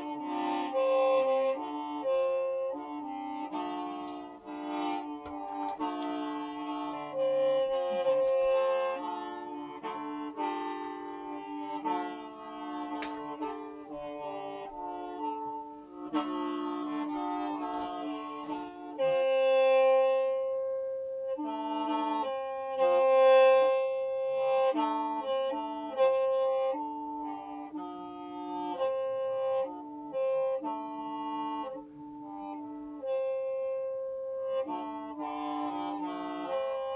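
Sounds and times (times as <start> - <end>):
bamboo mouth organ chords: 0.0 - 20.4.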